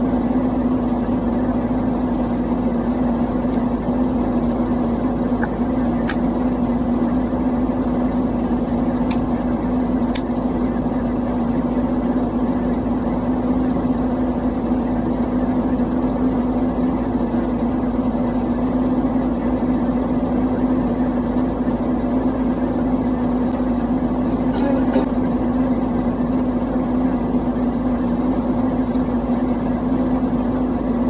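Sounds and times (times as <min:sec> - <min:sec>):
steady droning hum: 0:23.4 - 0:31.0.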